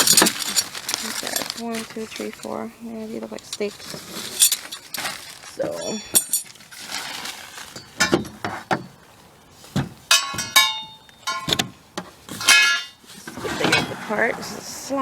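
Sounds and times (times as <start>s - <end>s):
metal parts clinking and clanking: 0.0s - 2.6s, 3.5s - 9.0s, 10.1s - 11.7s, 12.3s - 13.0s.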